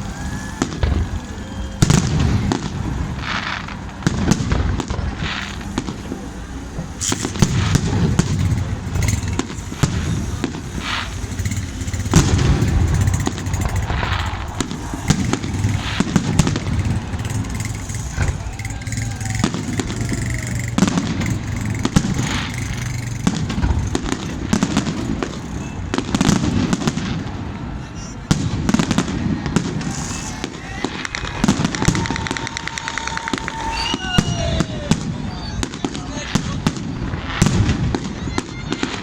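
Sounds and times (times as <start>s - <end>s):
steady low rumble: 0.0s - 35.7s
fireworks bangs and crackles: 0.0s - 39.0s.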